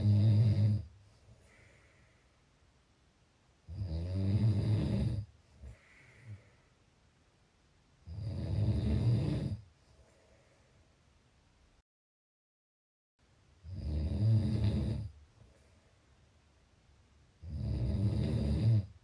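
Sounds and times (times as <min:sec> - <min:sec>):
person snoring: 0:00.0 - 0:00.9, 0:03.7 - 0:06.5, 0:08.0 - 0:09.6, 0:13.6 - 0:15.2, 0:17.4 - 0:18.9
faint breath: 0:01.0 - 0:02.6, 0:05.4 - 0:07.0, 0:09.7 - 0:11.1.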